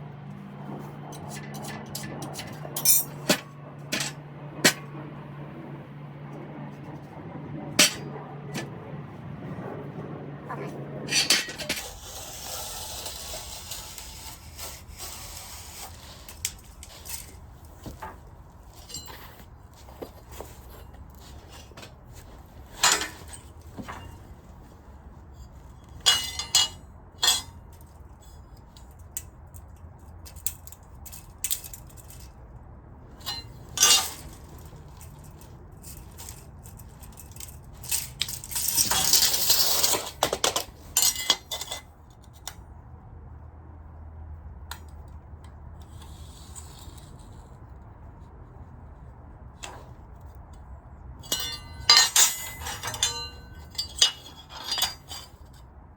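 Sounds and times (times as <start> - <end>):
steel pieces clinking: 1.2 - 4.8, 7.8 - 8.0, 11.1 - 24.3, 25.4 - 32.3, 33.2 - 41.9, 51.2 - 55.5.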